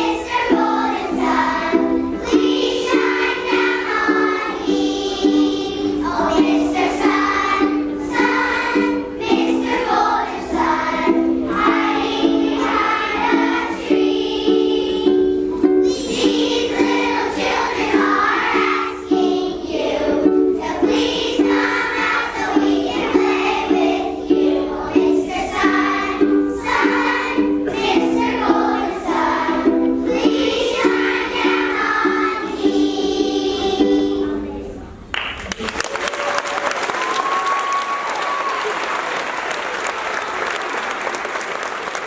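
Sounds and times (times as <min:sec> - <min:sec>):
children singing in unison: 0:00.0 - 0:34.5
ukulele strumming: 0:00.0 - 0:34.8.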